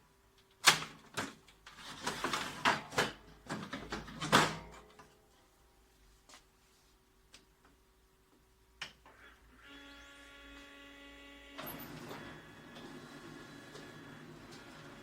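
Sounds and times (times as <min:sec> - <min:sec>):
copier drive mechanism running: 0:11.5 - 0:15.0.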